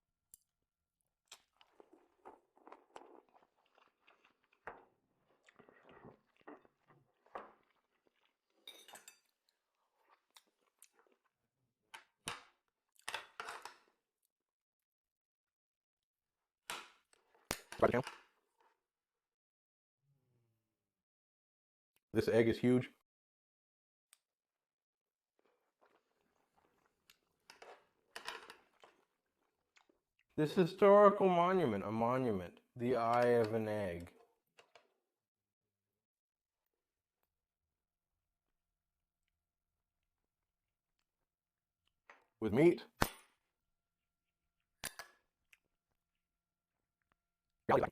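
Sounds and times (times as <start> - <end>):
chewing and crunching: 1.3 - 11.4.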